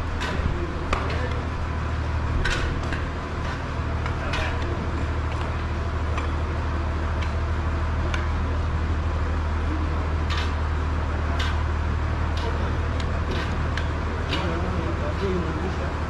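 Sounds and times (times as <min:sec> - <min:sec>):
low machine hum: 0:00.0 - 0:16.0
sharp clicks and clanks: 0:02.4 - 0:06.4, 0:10.2 - 0:10.6, 0:11.3 - 0:11.7, 0:12.3 - 0:15.5.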